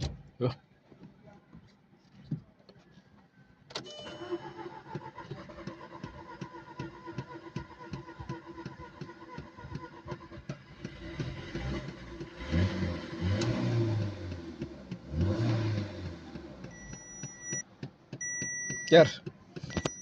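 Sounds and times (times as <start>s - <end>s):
starter motor cranking engine: 4.4s - 14.1s.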